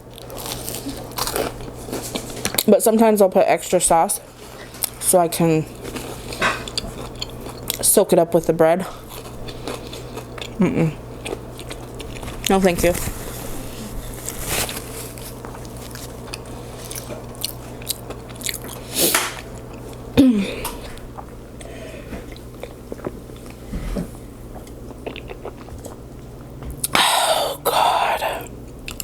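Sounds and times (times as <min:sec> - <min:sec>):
person chewing food: 0:00.1 - 0:02.7, 0:05.8 - 0:07.9, 0:08.9 - 0:20.0, 0:20.6 - 0:23.6, 0:24.5 - 0:27.0, 0:27.6 - 0:29.0.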